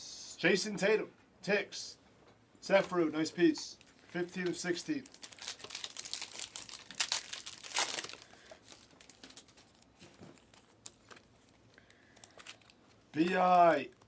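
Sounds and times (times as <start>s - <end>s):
handling of cards: 3.7s - 14.0s
plastic packaging crinkling and tearing: 4.9s - 13.3s.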